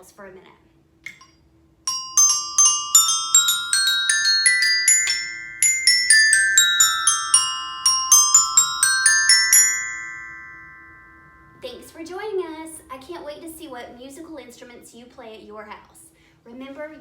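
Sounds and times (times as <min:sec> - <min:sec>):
step bells struck with mallet: 0:01.1 - 0:11.6.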